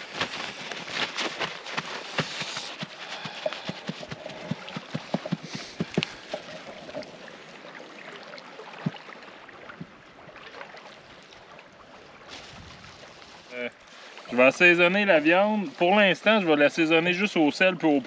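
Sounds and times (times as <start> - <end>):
campfire crackling: 0.0 - 7.5.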